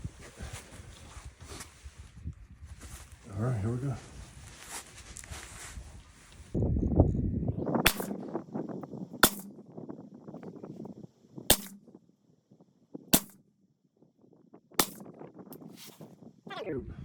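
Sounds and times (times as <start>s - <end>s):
suppressed rifle shots: 7.8s - 8.3s, 9.2s - 9.6s, 11.5s - 11.8s, 13.2s - 13.4s, 14.8s - 15.1s.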